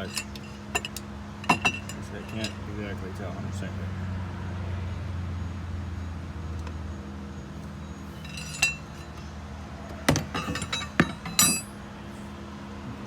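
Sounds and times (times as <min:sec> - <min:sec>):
hand tools clanking on metal: 0:00.0 - 0:02.9, 0:08.1 - 0:09.3, 0:10.0 - 0:11.8.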